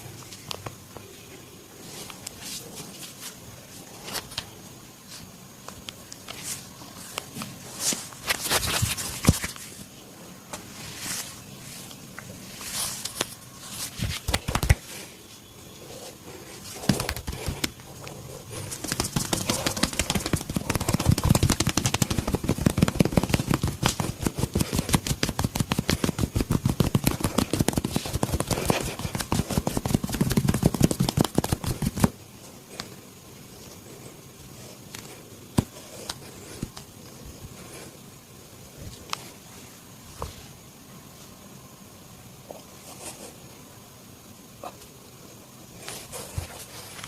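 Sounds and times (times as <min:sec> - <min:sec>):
hands rubbing and scratching: 0:10.8 - 0:15.1, 0:15.9 - 0:32.2
rapid hand slaps: 0:14.0 - 0:14.9, 0:16.8 - 0:17.8, 0:18.7 - 0:32.2
sharp cracks: 0:18.6 - 0:32.1.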